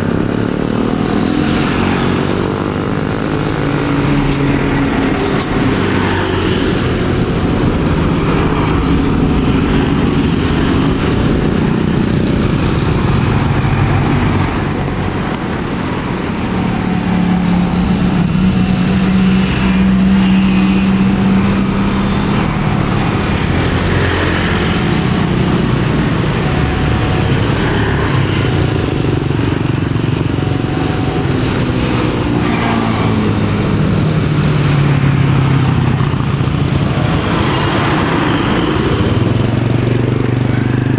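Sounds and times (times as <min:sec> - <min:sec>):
engine droning: 0:00.0 - 0:40.9.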